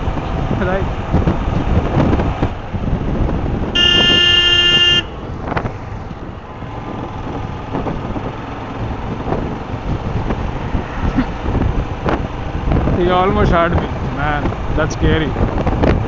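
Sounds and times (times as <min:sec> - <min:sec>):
motorcycle road and wind noise: 0:00.0 - 0:16.0
vehicle horn blast: 0:03.8 - 0:05.2.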